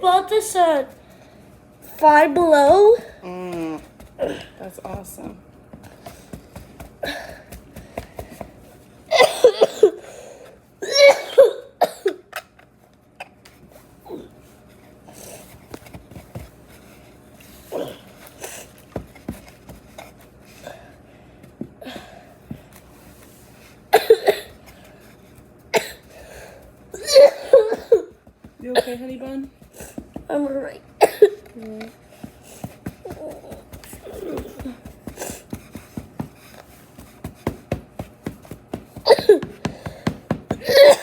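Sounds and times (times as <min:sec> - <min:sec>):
girl coughing hard: 0:09.1 - 0:10.1, 0:10.8 - 0:12.3, 0:23.9 - 0:24.6, 0:25.7 - 0:26.1, 0:26.9 - 0:29.2, 0:31.0 - 0:31.5, 0:39.0 - 0:39.9, 0:40.5 - 0:41.0.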